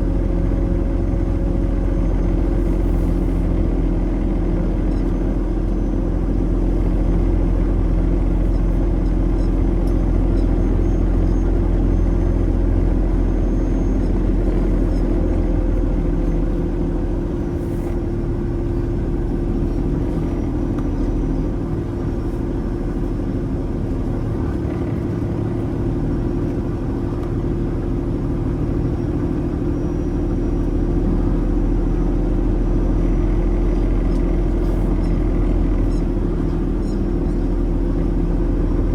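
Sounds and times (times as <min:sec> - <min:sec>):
truck engine drone: 0:00.0 - 0:38.9
tyre and road rumble: 0:00.0 - 0:38.9.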